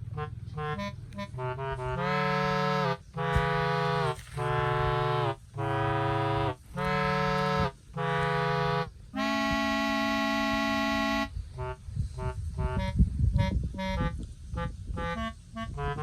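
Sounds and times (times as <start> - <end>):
reedy chords: 0.0 - 16.0.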